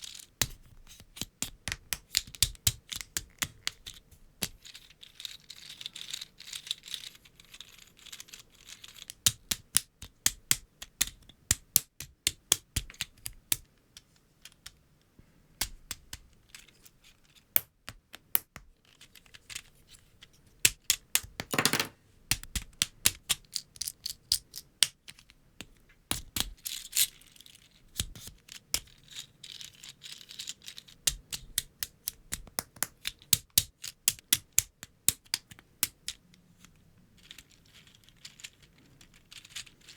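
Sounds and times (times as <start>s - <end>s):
rustling of loose pieces: 3.5s - 9.2s, 26.5s - 31.5s, 36.1s - 39.9s.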